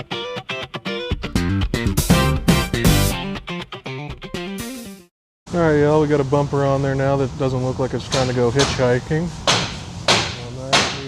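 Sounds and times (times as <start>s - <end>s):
electric guitar and bass music: 0.0s - 5.1s.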